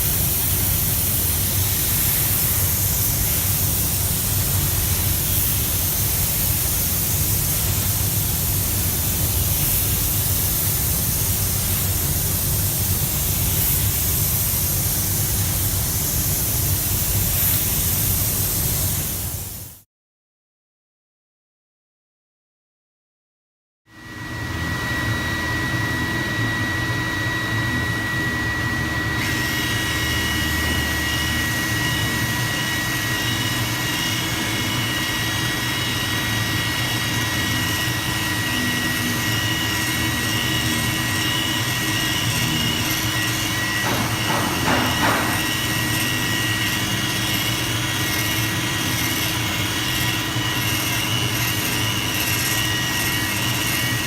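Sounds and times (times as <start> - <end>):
machine whining over low hum: 23.9 - 54.0.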